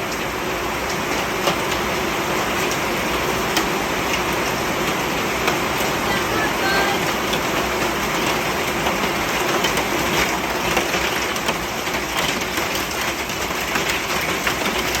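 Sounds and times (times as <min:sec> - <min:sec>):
heavy rain hissing and tapping: 0:00.0 - 0:15.0.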